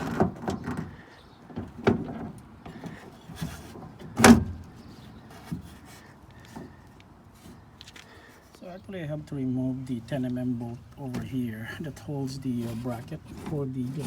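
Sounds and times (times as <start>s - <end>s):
knocks and rattles in car door: 0.0s - 4.7s.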